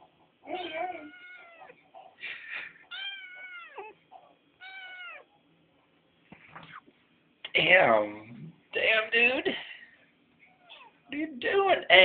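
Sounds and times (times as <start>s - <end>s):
kitten meowing: 0.6s - 1.7s, 2.9s - 3.9s, 4.6s - 5.2s.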